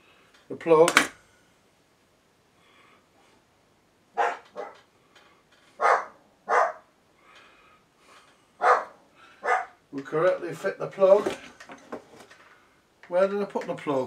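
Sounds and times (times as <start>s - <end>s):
dog barking: 4.2s - 4.8s, 5.8s - 6.9s, 8.6s - 9.8s.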